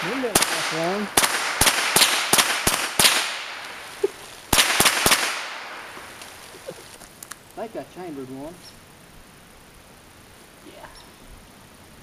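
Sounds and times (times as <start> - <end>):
gunshots with echo: 0.0 - 3.6, 4.5 - 5.9.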